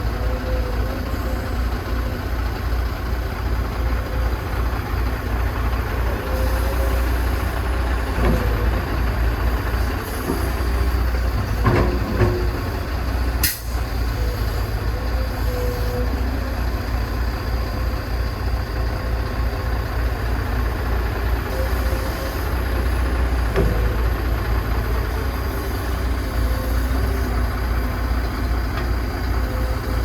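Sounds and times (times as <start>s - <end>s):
excavator diesel engine rumble: 0.0s - 30.0s
machine clanks and knocks: 10.3s - 12.8s.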